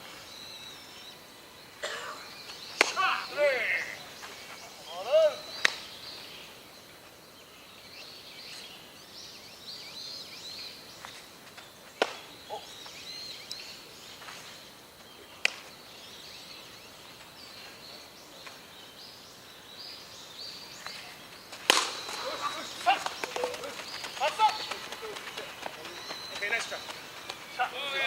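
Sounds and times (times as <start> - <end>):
birds chirping: 0.0 - 28.0
sharp smacks: 2.8 - 3.0, 5.6 - 5.9, 12.0 - 12.3, 15.4 - 15.8, 20.8 - 25.1.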